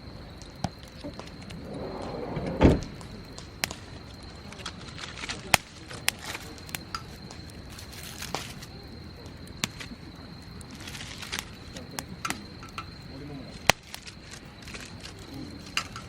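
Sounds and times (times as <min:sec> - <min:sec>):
high insect trill: 0:00.0 - 0:16.0
dull thump: 0:00.6 - 0:03.4.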